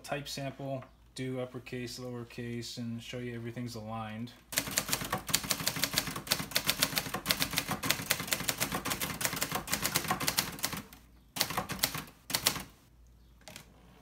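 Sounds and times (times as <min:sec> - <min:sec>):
typewriter keystrokes clacking: 0:04.6 - 0:12.7.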